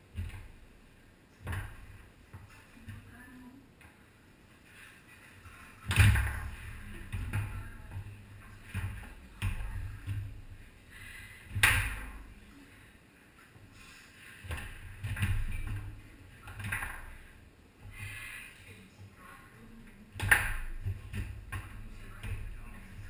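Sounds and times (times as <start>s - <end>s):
foosball knocks and clacks: 14.5s - 17.3s, 20.2s - 23.0s.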